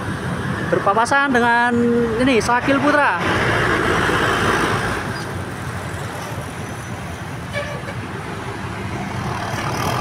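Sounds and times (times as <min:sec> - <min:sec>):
bus horn toot: 0:07.5 - 0:08.1.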